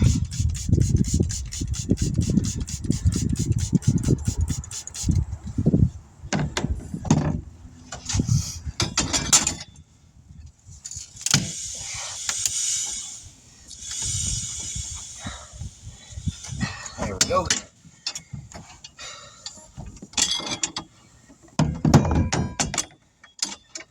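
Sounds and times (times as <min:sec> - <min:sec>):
rough scraping hiss: 0:00.0 - 0:05.6, 0:10.7 - 0:17.8
metal clanks on wheel rim: 0:08.8 - 0:09.8, 0:19.8 - 0:20.9, 0:21.5 - 0:23.9.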